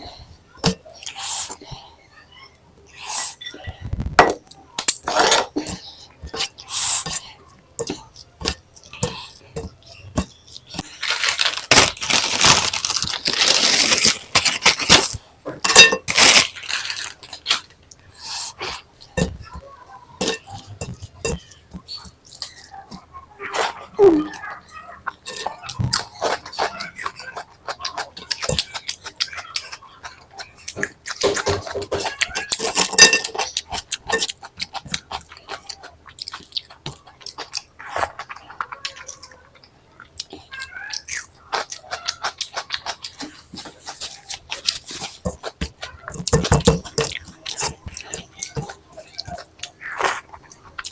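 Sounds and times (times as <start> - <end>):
crunching potato chips: 10.6 - 15.2, 16.0 - 17.8
person chewing food: 24.2 - 50.9.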